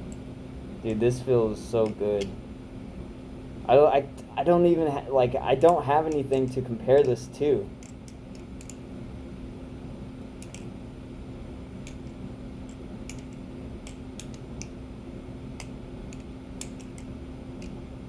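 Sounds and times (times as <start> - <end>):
steady low hum: 0.0 - 18.0
butterfly knife clicks: 10.4 - 10.7, 15.6 - 17.8.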